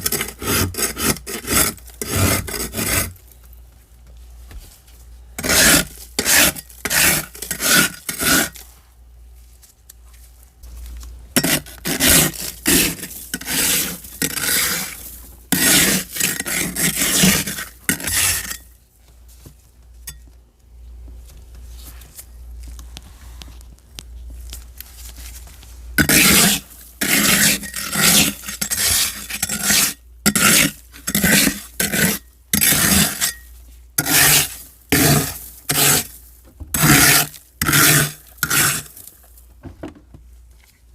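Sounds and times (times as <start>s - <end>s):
scraping frost in freezer: 0.0s - 3.2s, 5.3s - 9.0s, 10.6s - 18.7s, 26.0s - 39.4s.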